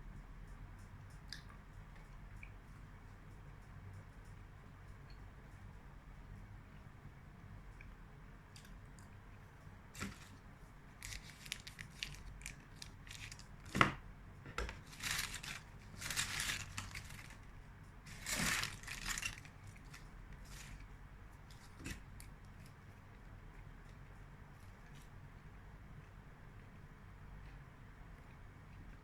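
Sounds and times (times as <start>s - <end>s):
candy wrapper crinkling: 10.0s - 10.4s, 11.0s - 13.8s, 14.8s - 17.4s, 18.1s - 20.8s.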